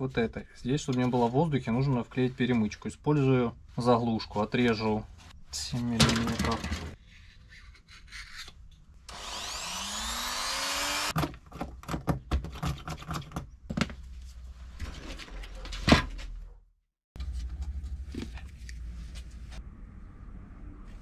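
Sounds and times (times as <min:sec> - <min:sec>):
small motor whining: 0:09.1 - 0:11.1.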